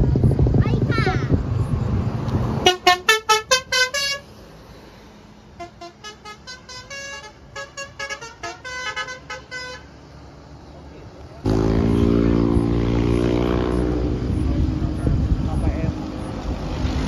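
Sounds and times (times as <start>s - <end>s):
musical bus air horn: 2.6s - 4.3s, 5.6s - 9.9s.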